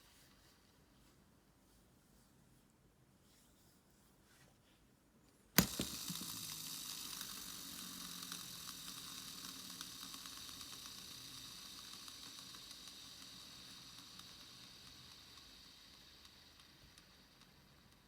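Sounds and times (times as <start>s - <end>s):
fishing reel spool whirring and ticking: 5.6s - 18.0s.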